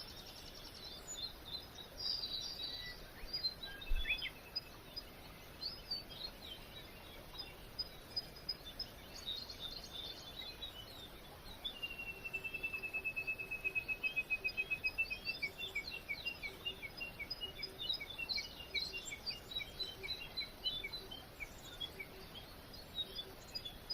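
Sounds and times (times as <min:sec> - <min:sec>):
small birds chirping: 0:00.0 - 0:23.9.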